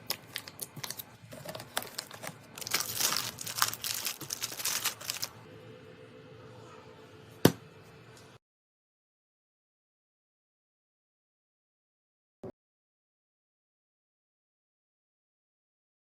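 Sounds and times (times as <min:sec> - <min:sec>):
plastic packaging crinkling and tearing: 0:00.0 - 0:05.4.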